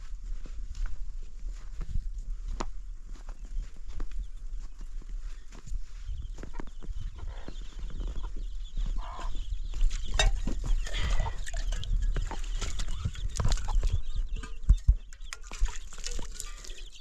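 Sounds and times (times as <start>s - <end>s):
chickens clucking: 6.2s - 17.0s
knocks and scraping: 9.9s - 16.7s.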